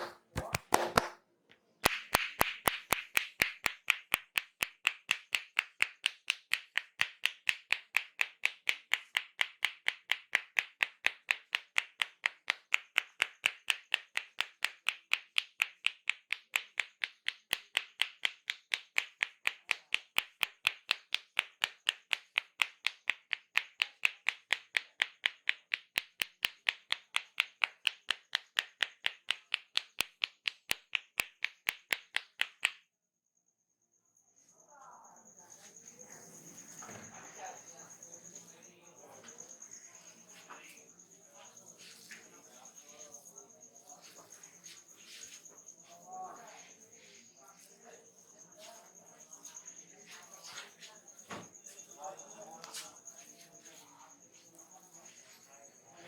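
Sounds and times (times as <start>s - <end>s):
hands slapping head: 0.0s - 1.2s, 1.8s - 32.8s, 41.5s - 42.3s, 44.0s - 46.0s, 50.4s - 51.8s, 52.6s - 53.8s.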